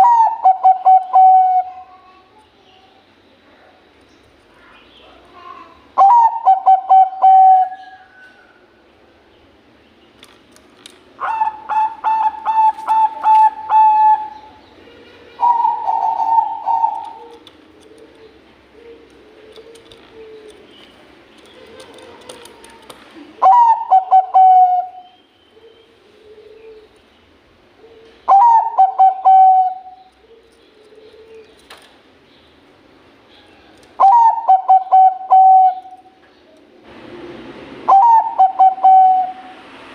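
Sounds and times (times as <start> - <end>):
dove cooing loudly: 0.0 - 1.8, 6.0 - 8.1, 11.2 - 20.7, 23.2 - 26.9, 27.8 - 31.4, 34.0 - 36.0, 37.9 - 39.5
fainter lower dove cooing: 15.4 - 20.7, 21.6 - 25.0, 25.6 - 26.9, 27.8 - 31.5, 33.5 - 36.1.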